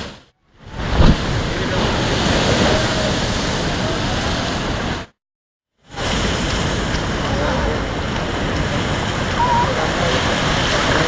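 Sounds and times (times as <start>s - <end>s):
surf breaking on shore: 0.0s - 5.1s, 5.8s - 11.0s
wind on microphone: 0.0s - 5.1s
loud thump: 0.9s - 1.3s.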